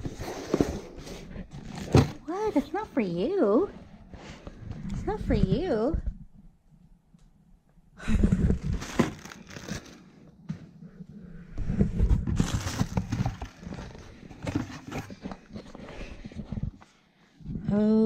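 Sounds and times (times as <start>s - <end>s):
packaging crinkling and tearing: 8.5s - 10.1s, 12.2s - 15.2s
sharp crackles of packaging: 8.6s - 10.1s, 12.4s - 14.8s.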